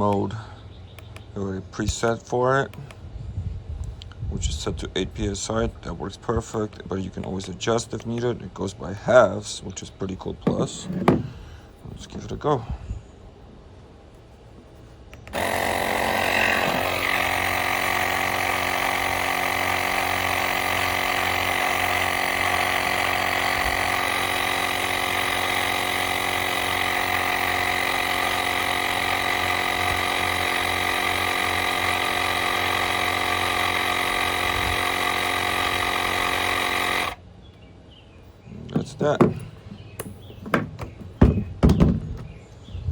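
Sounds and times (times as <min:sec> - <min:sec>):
portable air compressor running: 0:10.5 - 0:11.6, 0:15.3 - 0:37.2.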